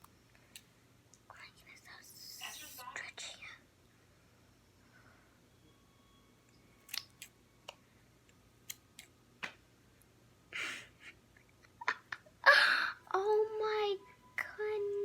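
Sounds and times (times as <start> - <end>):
scissors snipping: 6.8 - 7.3, 8.6 - 9.1.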